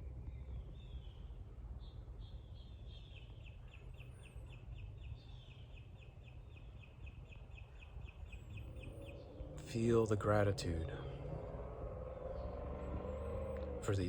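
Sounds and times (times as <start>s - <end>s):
low outdoor rumble: 8.0s - 14.0s.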